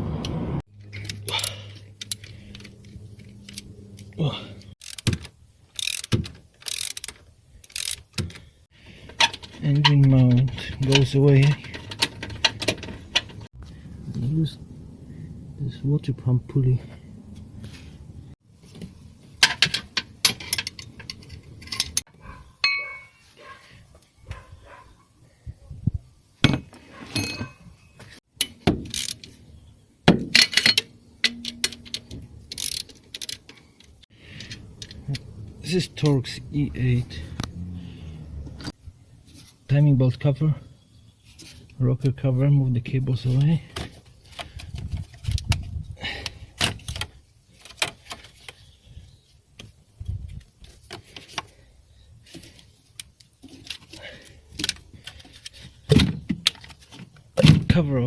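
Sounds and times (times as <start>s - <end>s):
metal tools clinking: 0.8s - 4.1s, 9.0s - 13.5s, 19.4s - 23.3s, 27.1s - 27.8s, 30.3s - 33.6s
tools and parts clattering: 0.8s - 13.6s, 18.7s - 23.3s, 26.4s - 29.4s, 30.1s - 35.8s, 52.2s - 57.8s.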